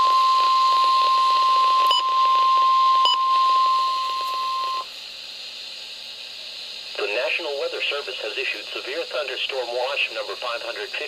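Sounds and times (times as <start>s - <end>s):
long steady warning beep: 0.0s - 4.9s
radio hiss: 6.8s - 11.0s.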